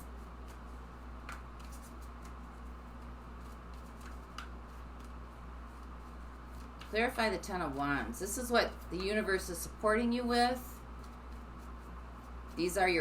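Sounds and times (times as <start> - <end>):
steady low hum: 0.0 - 13.0
cards clicking and tapping: 1.2 - 2.4, 3.0 - 5.2.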